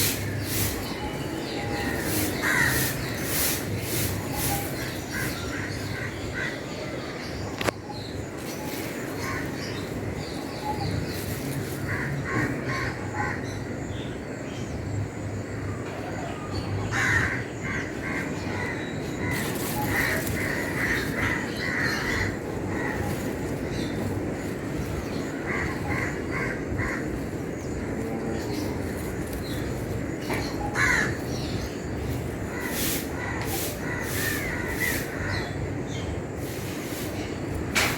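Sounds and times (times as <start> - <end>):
broom sweeping the ground: 0.0 - 6.0, 8.3 - 12.6, 19.0 - 26.0, 27.1 - 35.5, 36.4 - 37.9
birds calling: 0.0 - 37.9
crows cawing: 1.8 - 3.5, 11.7 - 13.5, 16.9 - 23.9, 24.7 - 27.6, 30.3 - 31.6, 32.4 - 35.6.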